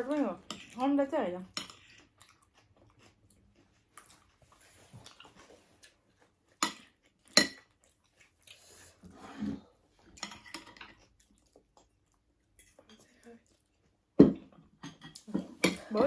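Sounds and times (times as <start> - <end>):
cutlery clinking on dishes: 6.6 - 7.7, 10.2 - 11.0, 14.2 - 16.0
cutlery clattering and scraping: 10.2 - 11.0.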